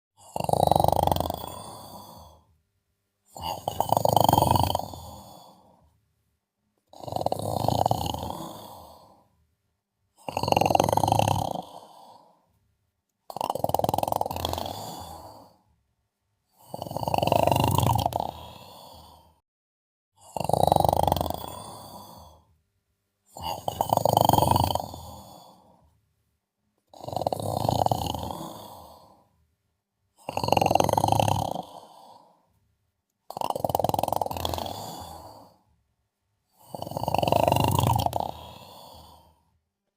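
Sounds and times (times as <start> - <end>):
person snoring: 0.2 - 2.5, 3.3 - 5.9, 6.8 - 9.4, 10.1 - 12.6, 13.2 - 15.7, 16.4 - 19.4, 20.2 - 22.6, 23.3 - 25.9, 26.8 - 29.4, 30.1 - 32.6, 33.2 - 35.8, 36.4 - 39.6.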